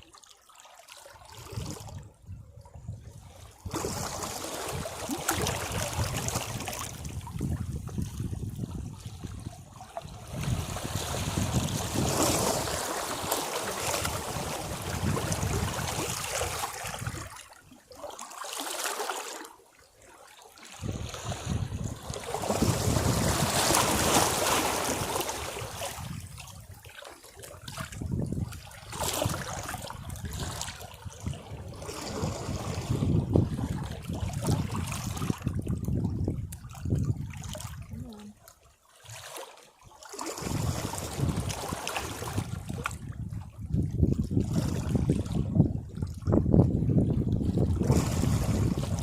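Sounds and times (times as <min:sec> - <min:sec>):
waves washing against rocks: 0:03.6 - 0:08.6, 0:10.0 - 0:17.3, 0:20.8 - 0:26.4, 0:40.2 - 0:43.1, 0:47.5 - 0:49.0.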